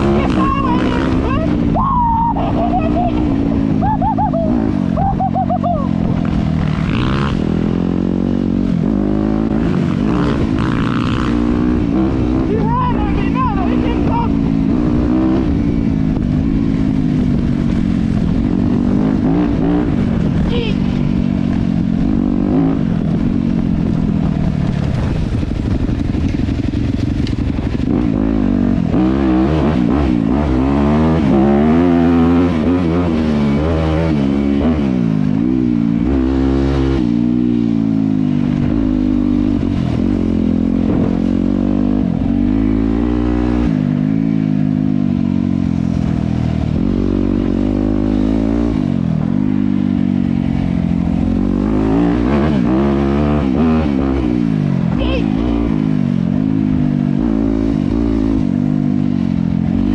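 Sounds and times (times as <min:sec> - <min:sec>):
dirt bike engine revving: 0:00.0 - 0:59.9.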